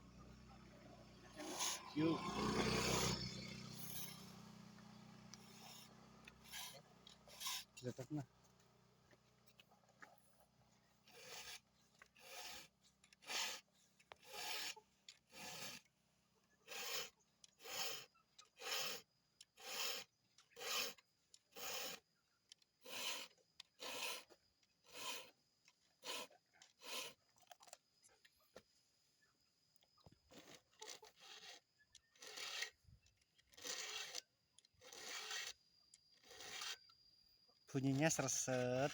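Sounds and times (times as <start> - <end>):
hand file rasping on chain: 1.3 - 4.3, 5.3 - 8.2, 11.0 - 15.9, 16.5 - 27.3, 30.3 - 37.0, 37.8 - 38.9.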